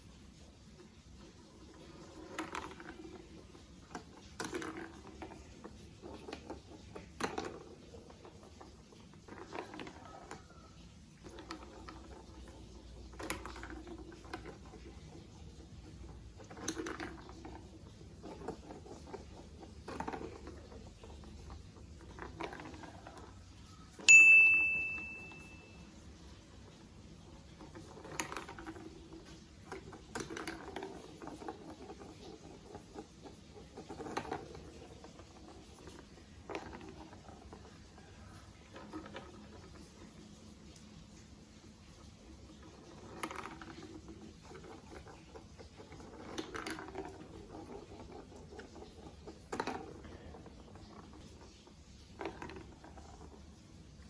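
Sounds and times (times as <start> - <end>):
plastic blocks clacking: 1.2 - 24.1, 26.6 - 40.2, 42.5 - 54.0
bright ding: 24.1 - 25.8.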